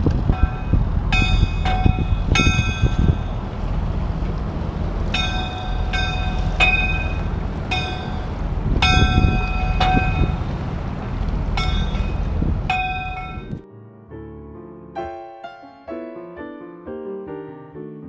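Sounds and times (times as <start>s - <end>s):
low rumble: 0.0s - 13.6s
bell ringing: 0.4s - 3.4s, 5.2s - 10.7s, 11.5s - 13.6s.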